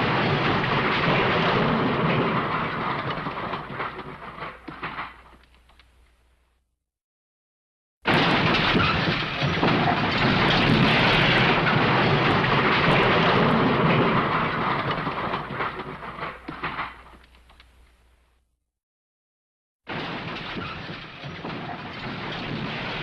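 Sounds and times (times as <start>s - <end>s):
dense rushing and rumbling: 0.0s - 4.6s, 8.2s - 16.4s.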